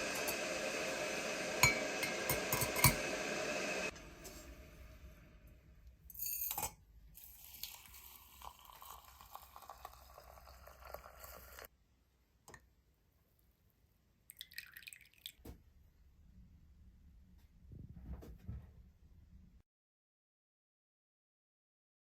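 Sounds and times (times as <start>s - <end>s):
liquid pouring into container: 7.2s - 11.7s, 14.3s - 15.5s.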